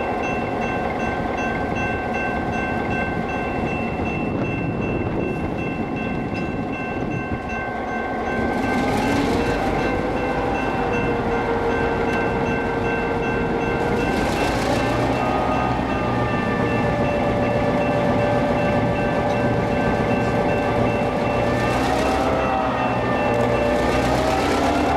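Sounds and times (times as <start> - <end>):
diesel locomotive engine whine: 0.0 - 24.9.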